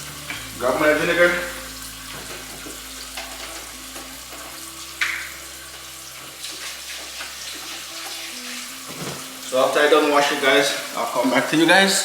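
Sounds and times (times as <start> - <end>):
tap running into a sink: 0.3 - 5.8.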